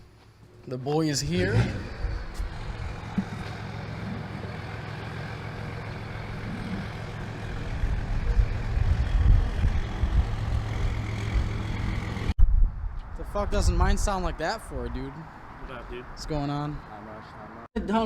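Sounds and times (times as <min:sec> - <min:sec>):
truck engine rumbling: 0:00.0 - 0:12.4.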